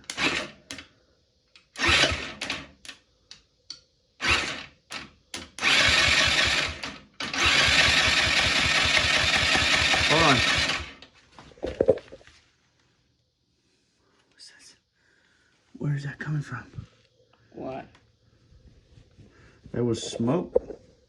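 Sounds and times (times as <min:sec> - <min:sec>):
electric starter cranking engine: 0:00.0 - 0:00.8, 0:01.6 - 0:02.8, 0:04.2 - 0:11.1.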